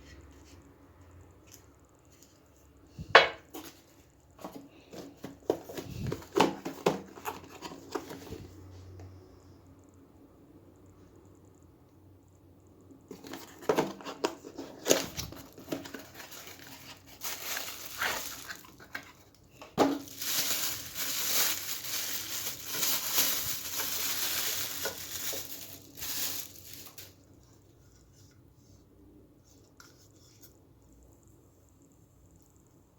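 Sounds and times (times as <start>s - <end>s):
packaging crinkling: 13.1s - 27.2s.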